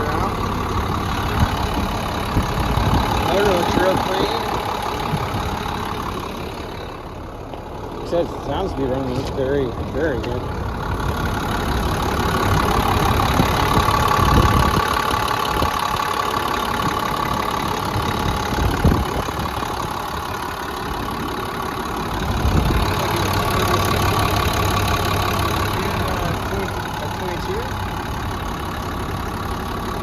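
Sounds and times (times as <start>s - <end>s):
diesel engine idling: 0.0s - 30.0s.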